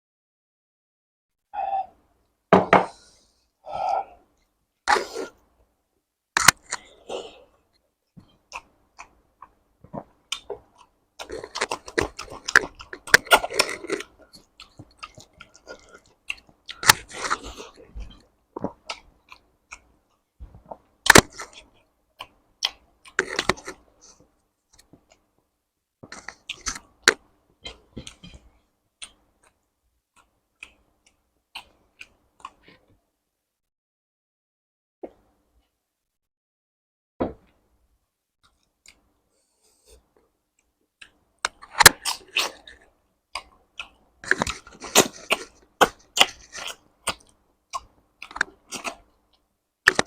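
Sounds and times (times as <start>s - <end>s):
wet chewing and smacking: 8.2s - 23.9s, 26.1s - 32.7s, 40.6s - 50.0s
food crunching: 8.3s - 19.9s, 41.0s - 50.0s.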